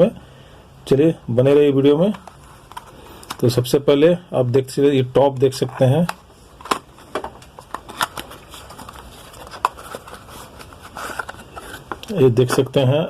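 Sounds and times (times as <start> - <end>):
faint handling noise: 1.5 - 3.7, 5.2 - 13.0.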